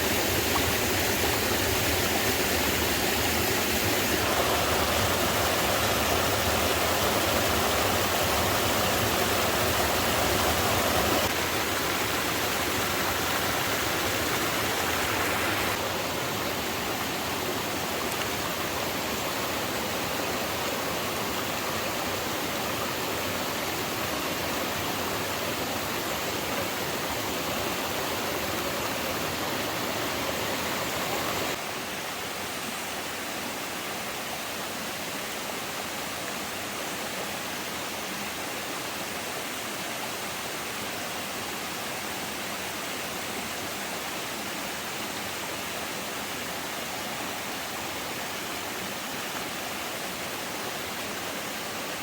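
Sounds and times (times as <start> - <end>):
flowing stream water: 0.0 - 52.0.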